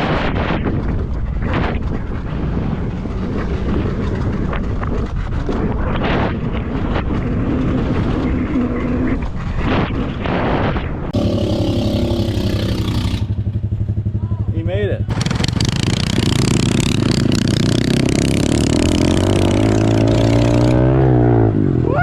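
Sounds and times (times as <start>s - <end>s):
wind on microphone: 0.0s - 14.2s, 15.0s - 22.0s
pit bike engine running: 11.1s - 21.6s.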